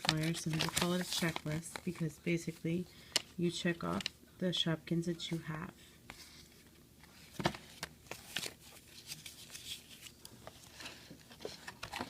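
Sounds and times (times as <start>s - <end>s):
paper rustling: 0.0s - 2.1s, 6.1s - 12.0s.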